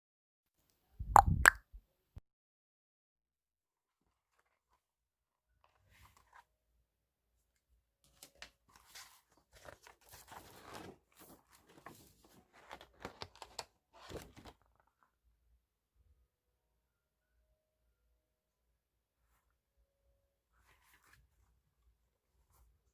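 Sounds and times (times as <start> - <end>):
paper tearing and crinkling: 8.7 - 14.6.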